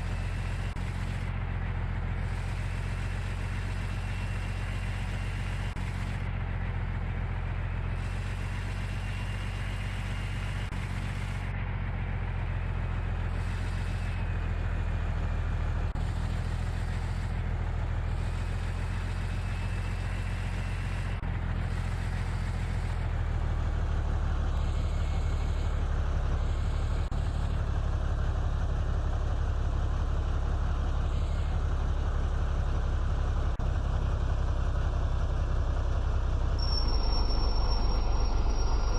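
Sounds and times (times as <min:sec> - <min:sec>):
truck engine running: 0:00.0 - 0:38.9
faint high whine: 0:36.6 - 0:38.9.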